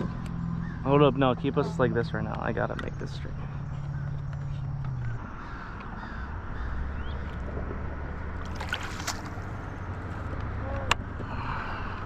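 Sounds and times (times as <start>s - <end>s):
low motor hum: 0.0s - 12.0s
paddle splashes: 8.4s - 9.7s
river water rushing around boat: 8.4s - 10.0s.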